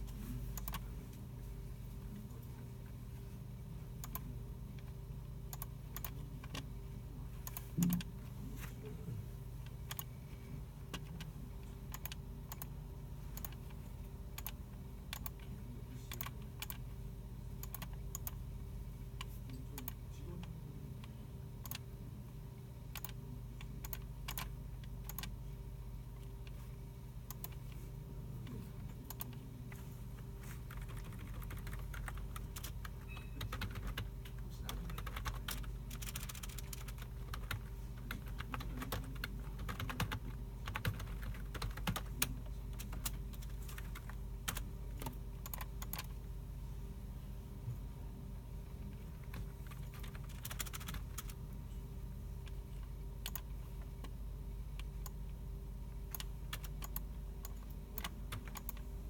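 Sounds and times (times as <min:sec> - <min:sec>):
steady low hum: 0:00.0 - 0:59.0
computer keyboard typing: 0:00.6 - 0:00.8, 0:04.0 - 0:06.7, 0:07.4 - 0:08.1, 0:09.6 - 0:10.1, 0:10.8 - 0:15.5, 0:16.1 - 0:16.8, 0:17.6 - 0:18.4, 0:21.6 - 0:21.8, 0:22.9 - 0:25.4, 0:27.2 - 0:27.8, 0:28.9 - 0:29.4, 0:30.5 - 0:46.2, 0:48.8 - 0:51.4, 0:52.4 - 0:54.2, 0:56.1 - 0:58.9.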